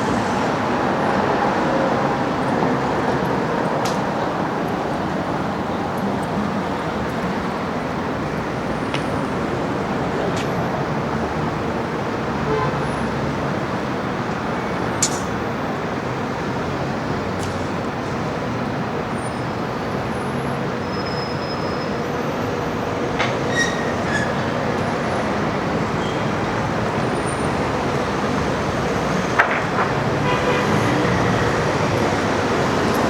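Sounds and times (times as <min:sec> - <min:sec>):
traffic noise: 0:00.0 - 0:33.0
sharp knocks: 0:15.0 - 0:15.4.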